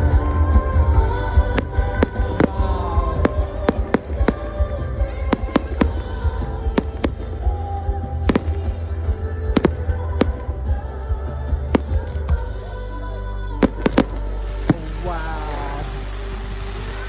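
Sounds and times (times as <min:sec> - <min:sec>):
music playing: 0:00.0 - 0:17.0
fireworks cracking: 0:01.5 - 0:07.6, 0:08.2 - 0:08.8, 0:13.6 - 0:17.0.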